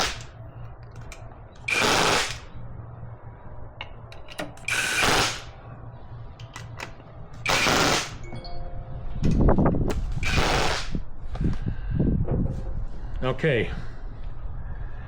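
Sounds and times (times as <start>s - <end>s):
power drill spinning: 1.0s - 2.4s, 4.6s - 5.4s, 7.4s - 8.2s, 10.1s - 11.0s.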